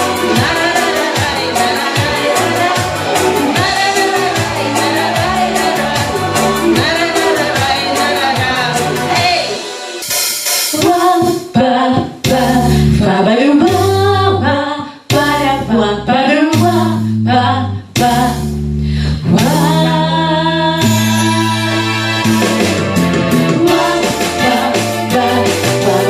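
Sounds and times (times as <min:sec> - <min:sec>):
held bass notes: 0:00.0 - 0:09.6, 0:12.2 - 0:26.0
woman singing: 0:00.0 - 0:09.7, 0:10.7 - 0:18.5, 0:19.2 - 0:22.6, 0:23.6 - 0:26.0
regular drum beats: 0:00.0 - 0:12.8, 0:20.8 - 0:26.0.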